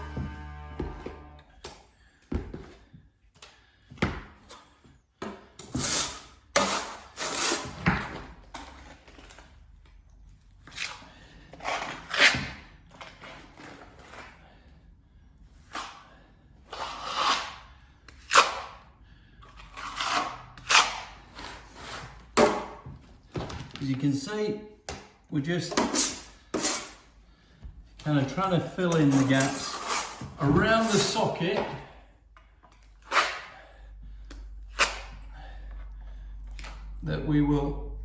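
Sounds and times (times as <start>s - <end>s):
trowel scraping plaster: 5.5s - 9.5s, 10.6s - 14.6s, 15.6s - 18.8s, 19.4s - 22.3s, 25.7s - 27.0s, 28.2s - 31.6s, 32.7s - 33.8s, 34.7s - 35.2s.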